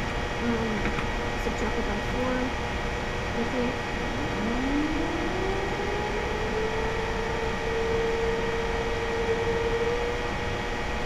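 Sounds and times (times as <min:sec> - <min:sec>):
warning siren tone: 0:03.4 - 0:11.0.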